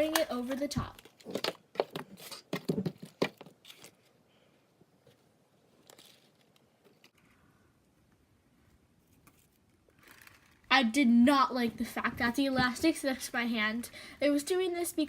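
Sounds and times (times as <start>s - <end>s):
faint handling sounds: 0.4s - 10.7s.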